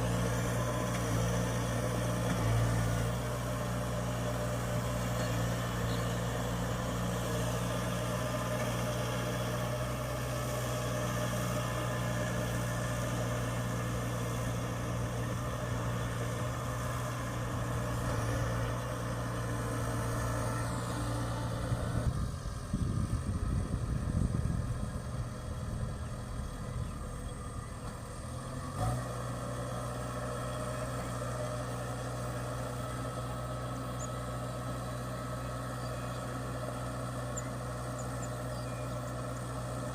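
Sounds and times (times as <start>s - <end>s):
diesel engine humming: 0.0s - 39.9s.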